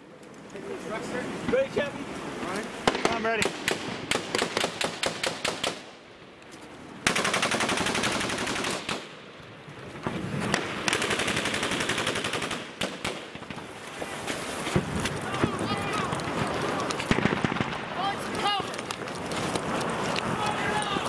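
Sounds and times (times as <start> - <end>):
automatic gunfire bursts: 7.0 - 9.0, 10.9 - 13.2.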